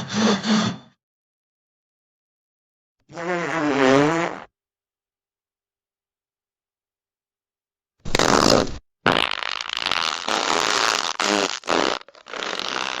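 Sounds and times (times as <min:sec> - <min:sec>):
comical fart sounds: 0:03.1 - 0:04.5, 0:08.0 - 0:13.0.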